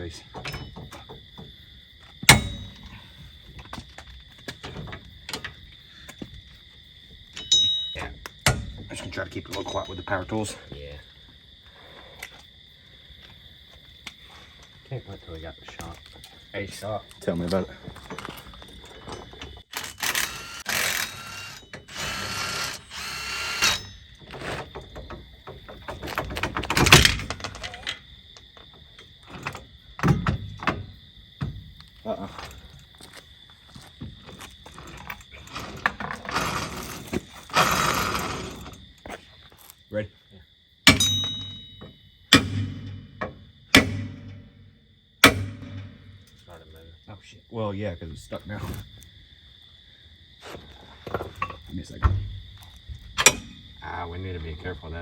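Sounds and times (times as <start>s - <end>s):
tool clanking against metal: 0.3s - 1.5s, 2.2s - 3.2s, 7.3s - 10.6s, 17.8s - 28.0s, 40.9s - 46.5s, 53.2s - 53.8s
power tool motor bursts: 19.8s - 23.8s, 36.3s - 38.7s.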